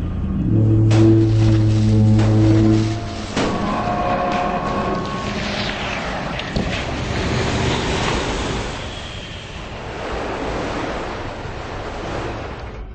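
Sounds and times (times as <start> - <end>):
churning sea water: 0.0 - 12.9.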